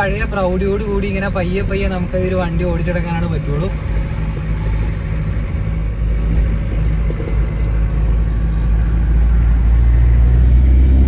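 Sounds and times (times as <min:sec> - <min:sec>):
diesel engine droning: 0:00.0 - 0:11.0.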